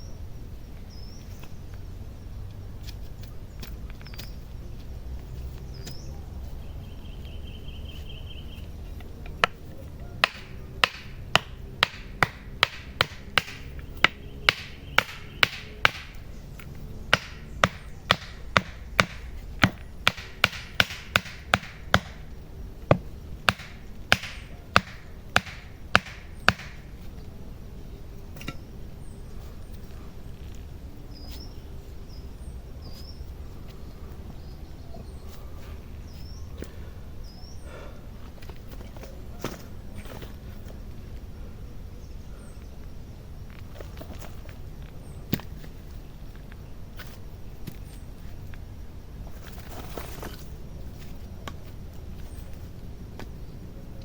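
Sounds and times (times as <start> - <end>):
chopping blows into wood: 10.2 - 26.9.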